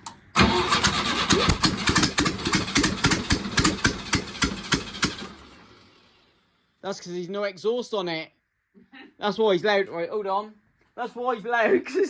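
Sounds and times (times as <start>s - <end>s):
engine starting and running unevenly: 0.0s - 6.4s.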